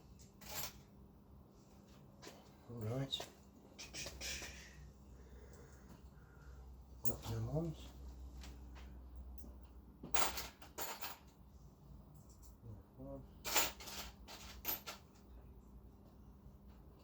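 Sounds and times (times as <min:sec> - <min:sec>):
metal washers and nuts clinking: 0:00.1 - 0:01.0, 0:07.0 - 0:12.7, 0:13.3 - 0:15.3.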